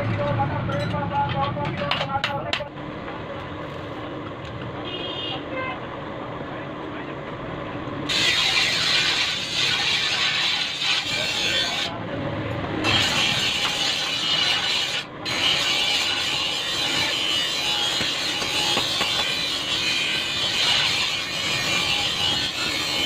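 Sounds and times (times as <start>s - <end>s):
grinder abrading metal: 8.1s - 12.0s, 12.8s - 23.0s.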